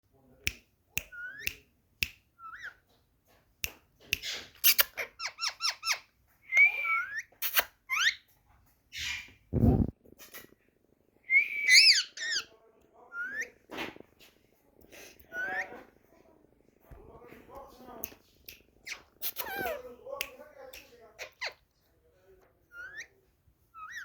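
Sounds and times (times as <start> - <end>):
parrot chirps: 1.0 - 1.6, 2.4 - 2.8, 4.2 - 8.3, 11.3 - 12.5, 15.3 - 15.8, 18.5 - 19.9, 21.2 - 21.7, 22.7 - 23.2, 23.8 - 24.0
parrot whistling and squeaking: 1.1 - 1.6, 4.2 - 8.2, 11.3 - 12.5, 18.8 - 19.8, 22.7 - 23.2, 23.8 - 24.0
short low rumble: 9.6 - 9.9.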